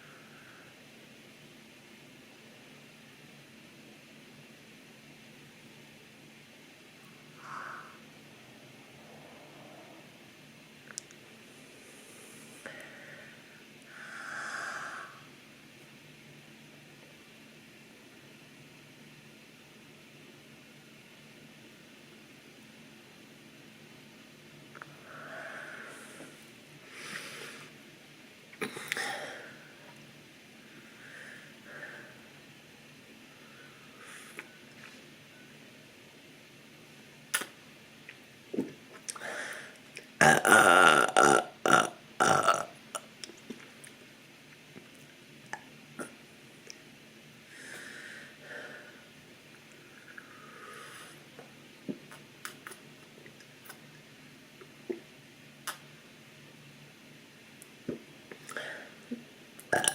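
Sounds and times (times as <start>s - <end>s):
noisy nose breaths: 11.4s - 15.3s, 24.8s - 27.8s, 33.3s - 35.1s, 49.8s - 51.4s
sharp mouth clicks: 37.3s - 37.6s, 55.6s - 55.8s
mouth clicks: 37.3s - 38.2s, 55.6s - 55.9s.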